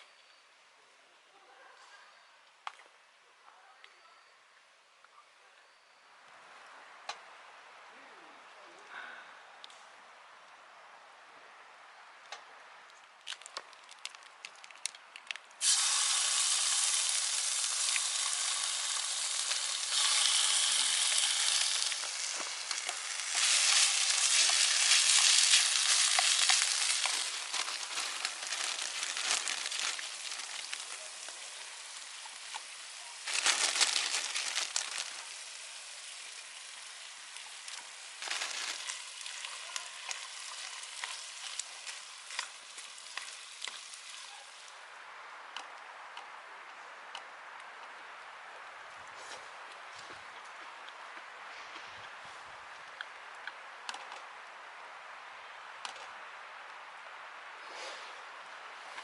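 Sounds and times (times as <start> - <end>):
food sizzling in a pan: 15.6 - 44.7.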